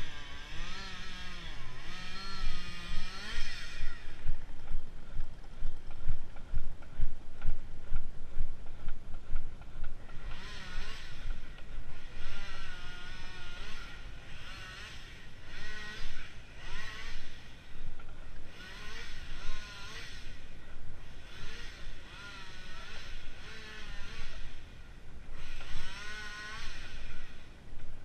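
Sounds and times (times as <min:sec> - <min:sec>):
handsaw cutting wood: 0:00.0 - 0:04.2, 0:10.2 - 0:11.3, 0:12.0 - 0:17.5, 0:18.5 - 0:20.4, 0:21.2 - 0:24.6, 0:25.4 - 0:27.5
low rumble: 0:00.0 - 0:14.5.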